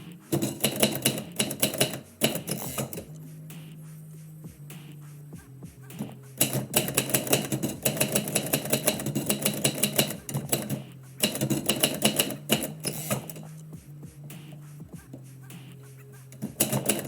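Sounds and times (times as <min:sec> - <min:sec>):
typewriter keys clicking: 0:00.3 - 0:03.1, 0:06.0 - 0:13.4, 0:16.4 - 0:17.0.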